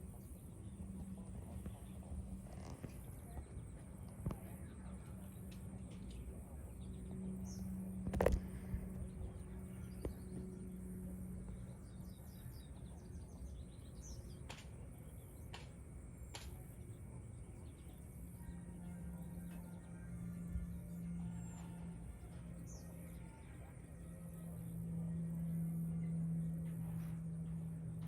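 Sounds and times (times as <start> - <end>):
steady low hum: 0.0 - 28.0.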